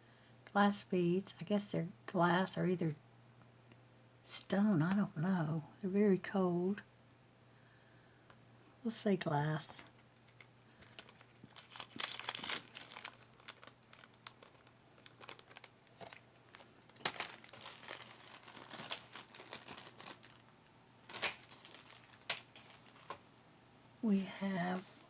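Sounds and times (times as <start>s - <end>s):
packaging crackling: 9.8s - 23.4s, 24.7s - 25.0s.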